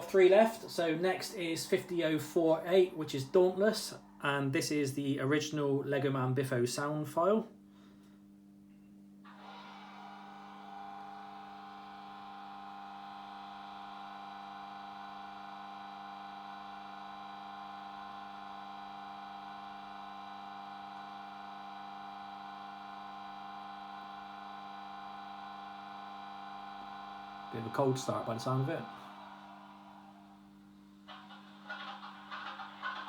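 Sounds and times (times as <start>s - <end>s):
diesel locomotive engine idling: 31.1s - 33.0s.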